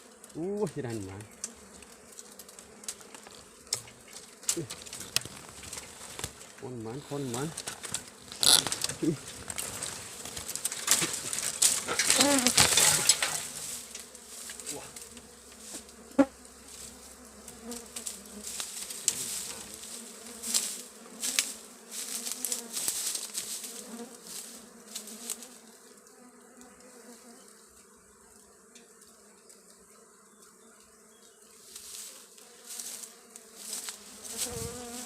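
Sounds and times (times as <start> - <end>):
crackling and rustling: 0.0 - 25.6
bees buzzing: 0.0 - 35.0.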